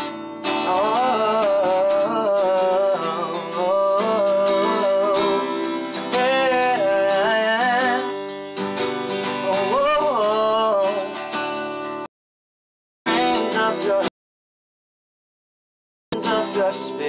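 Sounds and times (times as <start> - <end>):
acoustic guitar strumming: 0.0 - 12.1, 13.1 - 14.1, 16.2 - 17.0
person singing wordless melody: 0.5 - 8.2, 9.3 - 11.4, 13.1 - 14.1, 16.2 - 17.0.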